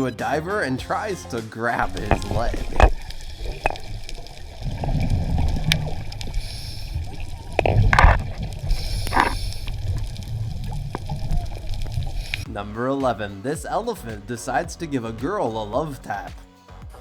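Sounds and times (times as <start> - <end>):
bubbles gurgling: 1.8 - 12.5
muffled underwater rumble: 1.8 - 12.5
sharp underwater clicks: 1.8 - 12.5.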